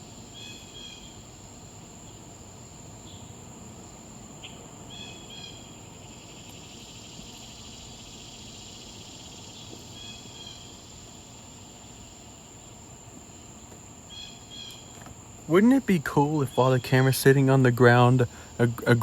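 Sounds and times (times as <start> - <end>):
cicada buzz: 0.0 - 19.0
insect high-pitched trill: 4.3 - 19.0.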